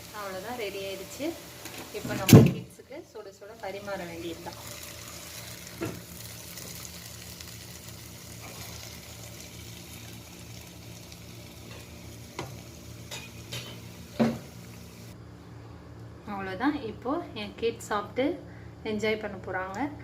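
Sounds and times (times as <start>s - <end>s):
food sizzling in a pan: 0.0s - 15.2s.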